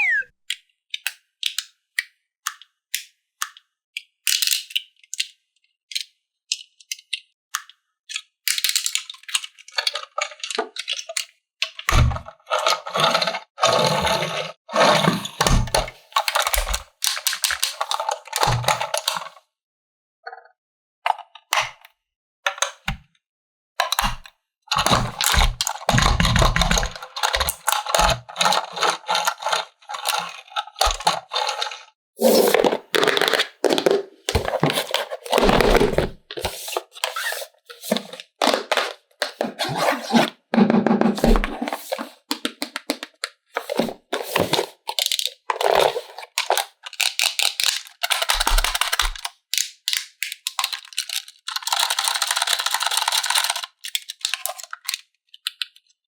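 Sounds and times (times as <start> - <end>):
plastic toy parts clicking and knocking: 0.0 - 14.3, 15.1 - 19.4, 23.8 - 39.6, 41.1 - 56.0
packaging rustling and rattling: 24.8 - 40.3, 41.2 - 55.0.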